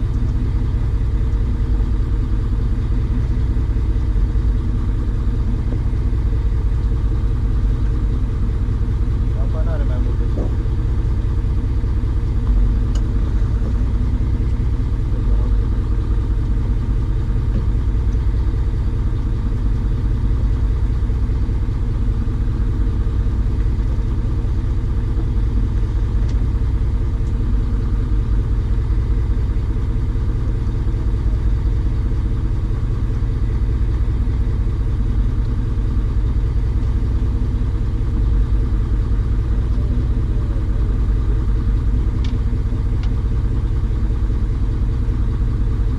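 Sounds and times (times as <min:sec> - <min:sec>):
engine running steadily: 0:00.0 - 0:45.9.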